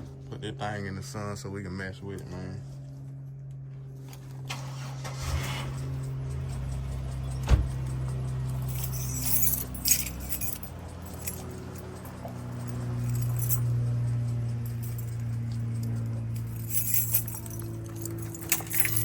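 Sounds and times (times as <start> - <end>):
steady low hum: 5.6 - 19.0
light metallic jingling: 5.7 - 19.0.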